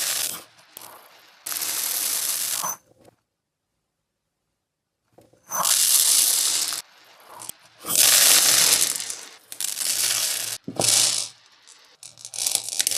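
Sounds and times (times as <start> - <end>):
plastic beads rattling: 0.0 - 2.8, 5.5 - 12.9.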